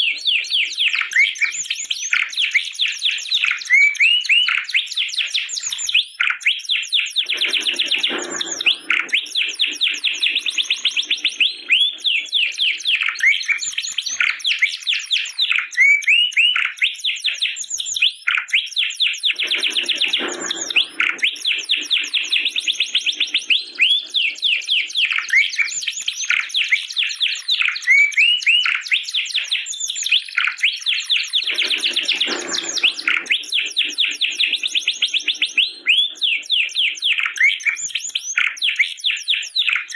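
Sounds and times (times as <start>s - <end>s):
canary singing: 7.0s - 16.8s, 19.2s - 39.8s.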